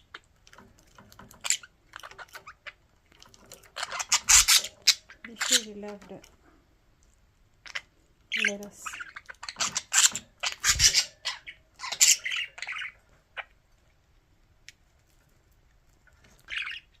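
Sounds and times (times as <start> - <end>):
budgerigars squawking: 3.6 - 5.8, 7.6 - 13.6, 16.5 - 17.0.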